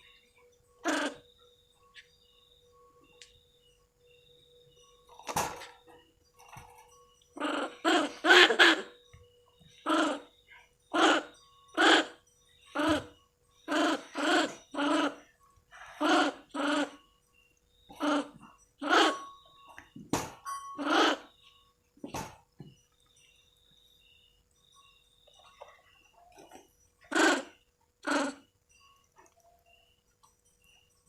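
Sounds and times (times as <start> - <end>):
monkey calling: 0.8 - 1.2, 7.4 - 9.0, 9.8 - 10.3, 10.9 - 13.1, 13.7 - 15.2, 16.0 - 17.0, 17.9 - 19.2, 20.8 - 21.3, 27.1 - 28.4.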